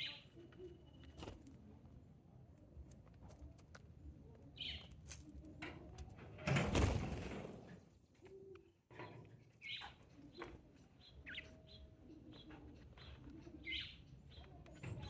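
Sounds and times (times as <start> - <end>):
sparrows chirping faintly: 0.0 - 1.8, 3.9 - 5.5, 7.8 - 15.0.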